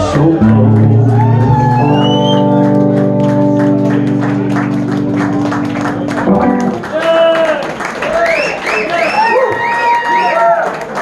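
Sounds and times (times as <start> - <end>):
audience applause: 0.3 - 11.0
band chord ringing: 2.9 - 6.8.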